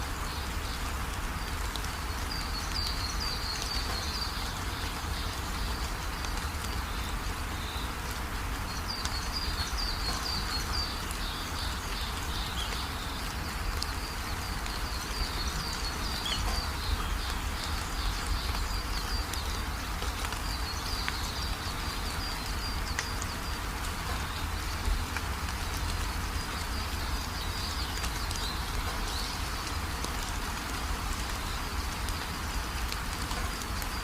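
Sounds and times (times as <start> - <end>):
rain drop ticks: 0.0 - 34.0
steady rain falling: 0.0 - 34.0
bird chirping: 13.9 - 19.6.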